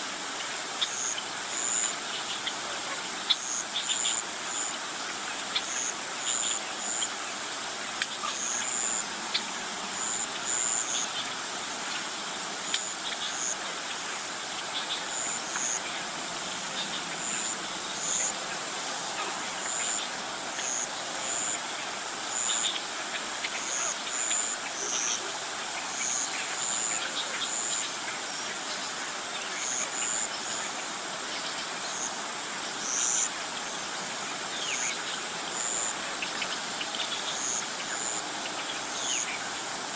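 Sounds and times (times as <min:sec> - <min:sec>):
insects and birds chirping: 0:00.0 - 0:39.9
steady hiss: 0:00.0 - 0:39.9.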